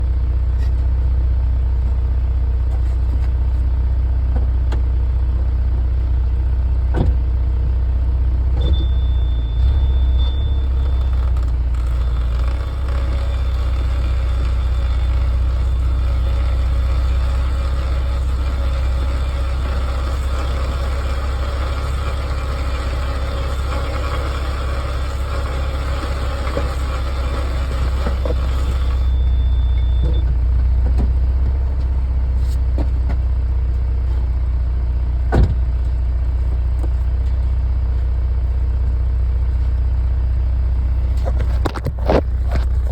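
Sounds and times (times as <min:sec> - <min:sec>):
car road rumble: 0:00.0 - 0:42.9
humming drone: 0:08.4 - 0:32.5
thin high whine: 0:08.6 - 0:30.2.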